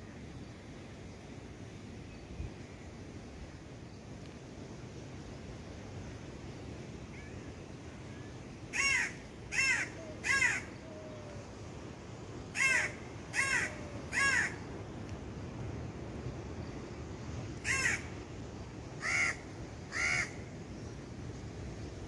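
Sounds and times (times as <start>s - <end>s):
steady hiss: 0.0s - 22.0s
bird calling: 8.8s - 11.4s, 12.6s - 14.7s.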